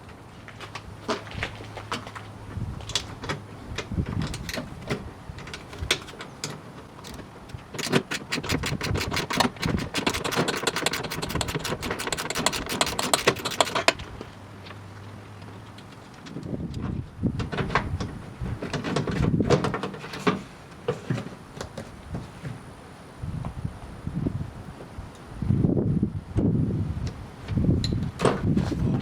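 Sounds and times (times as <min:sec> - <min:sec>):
socket ratchet clicking: 0:07.8 - 0:14.0.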